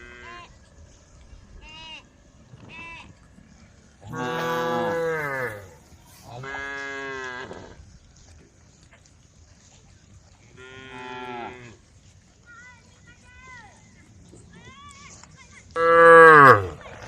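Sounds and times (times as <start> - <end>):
cows mooing: 4.1 - 5.8, 15.8 - 16.9.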